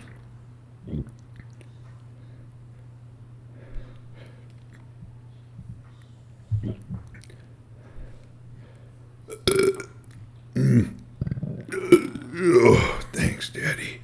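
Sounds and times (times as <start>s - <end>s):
loud burps: 9.3s - 10.0s, 10.6s - 11.0s, 11.7s - 13.4s.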